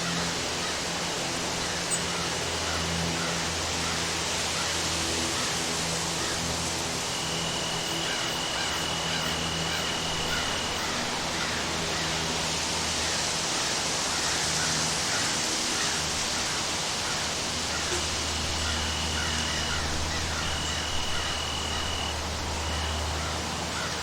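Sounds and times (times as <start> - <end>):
high whine: 0.0 - 24.0
rain in a forest: 0.0 - 24.0
animal chirping calls: 7.0 - 12.2, 16.4 - 23.4.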